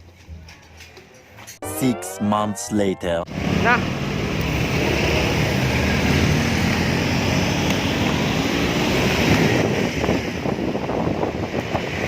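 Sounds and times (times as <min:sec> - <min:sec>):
passing motor traffic: 0:03.2 - 0:12.0
wind rushing over microphone: 0:03.3 - 0:12.0.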